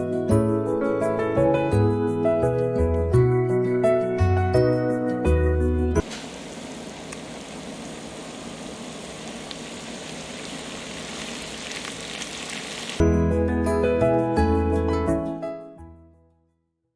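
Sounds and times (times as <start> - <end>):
background music: 0.0 - 6.0, 13.0 - 16.4
chickpeas sizzling in a pan: 9.0 - 13.0.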